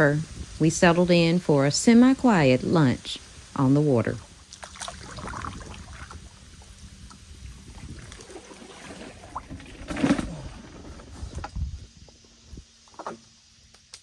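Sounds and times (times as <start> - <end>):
light water sounds: 3.1 - 11.4
bump on paddleboard: 7.8 - 11.7.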